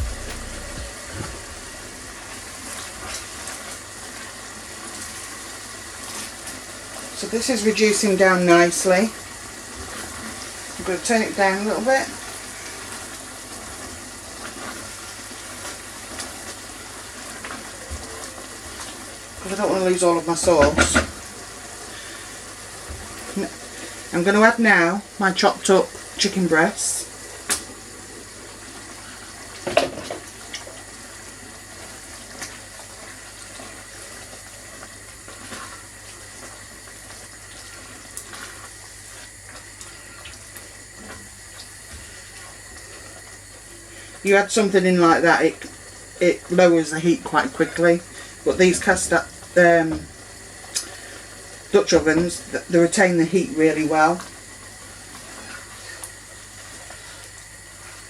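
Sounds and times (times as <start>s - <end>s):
chicken sizzling in hot sauce: 0.0s - 44.3s
sauce bubbling and sizzling: 27.1s - 44.2s, 49.2s - 51.8s, 54.2s - 58.0s.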